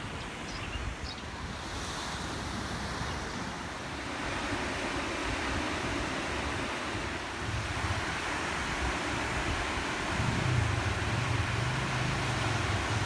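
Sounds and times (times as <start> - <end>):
ocean surf washing onto beach: 1.4 - 13.0
wind buffeting microphone: 3.9 - 13.0.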